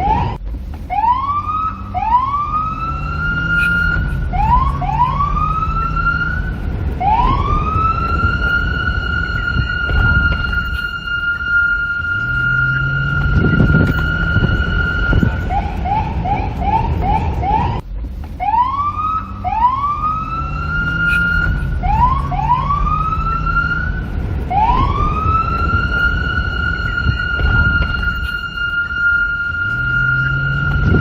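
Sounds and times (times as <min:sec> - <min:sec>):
low rumble: 0:00.0 - 0:31.0
police car siren: 0:00.0 - 0:31.0.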